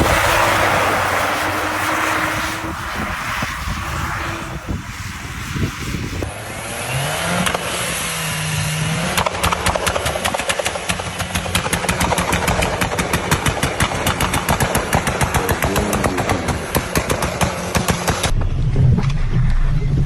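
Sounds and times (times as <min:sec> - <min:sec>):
car engine running: 0:00.0 - 0:06.2
rapid clatter of clicks and knocks: 0:09.2 - 0:18.3.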